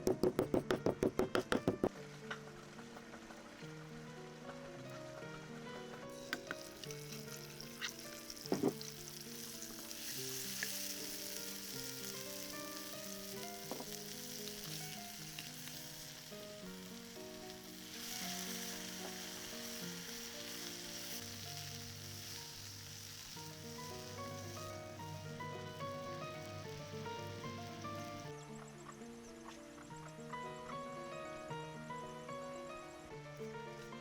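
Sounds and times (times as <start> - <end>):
sharp clicks and knocks: 0.0 - 1.9
soft melodic background music: 0.0 - 34.0
food sizzling in a pan: 6.1 - 28.6.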